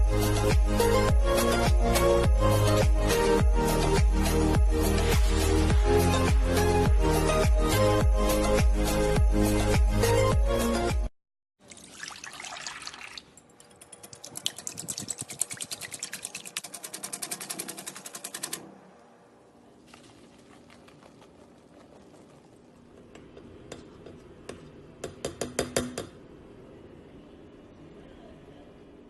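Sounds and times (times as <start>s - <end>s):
liquid pouring: 11.6s - 16.9s, 19.8s - 23.1s
whisking in a bowl: 13.8s - 18.6s.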